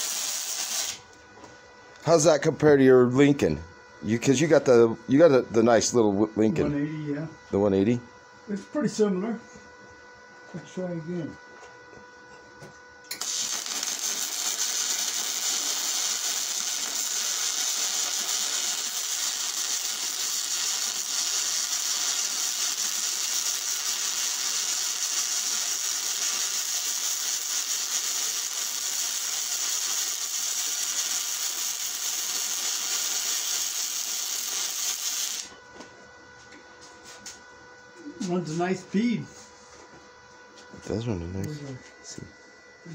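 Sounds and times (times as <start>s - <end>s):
arc welding hissing crackle: 0.0s - 1.1s, 13.1s - 35.5s.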